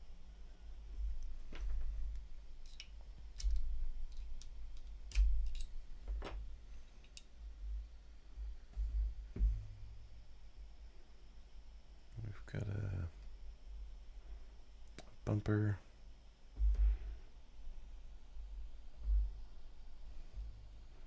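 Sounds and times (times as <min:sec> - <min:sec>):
small metal parts clicking: 0:02.6 - 0:05.8
handling bumps: 0:08.7 - 0:10.2.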